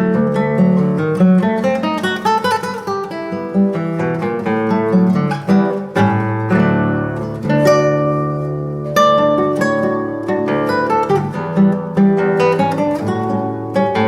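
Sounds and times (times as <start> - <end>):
solo classical guitar: 0.0 - 14.0.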